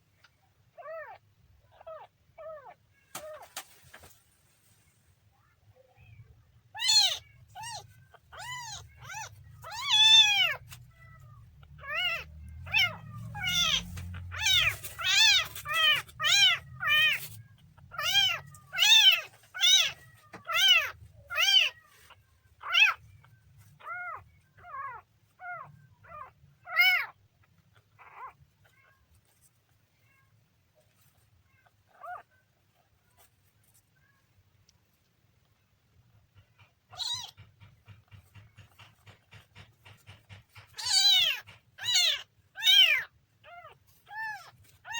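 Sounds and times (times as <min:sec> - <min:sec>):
kitten meowing: 0:06.7 - 0:23.1, 0:36.9 - 0:37.4, 0:40.7 - 0:44.9.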